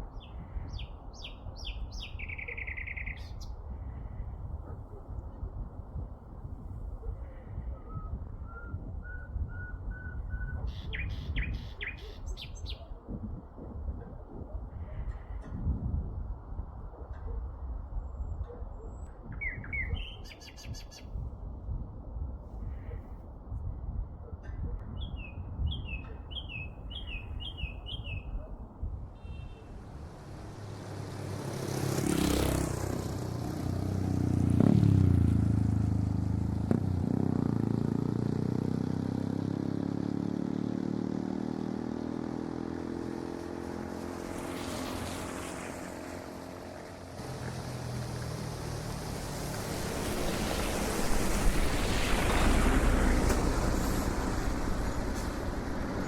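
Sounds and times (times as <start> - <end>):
vehicles passing: 0.0 - 9.5, 26.3 - 56.0
bird chirping: 0.2 - 3.6, 7.9 - 13.0, 19.4 - 21.1, 25.0 - 28.5.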